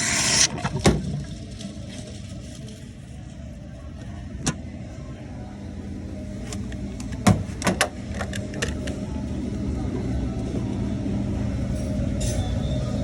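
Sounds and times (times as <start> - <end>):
cooling unit humming: 0.0 - 13.0.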